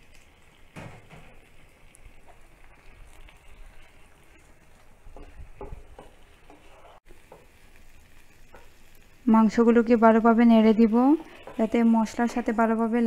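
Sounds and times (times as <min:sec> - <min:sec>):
chicken frying in oil: 0:00.0 - 0:13.0
spoon knocking and scraping pan: 0:05.0 - 0:07.6, 0:08.4 - 0:08.8, 0:10.8 - 0:12.4.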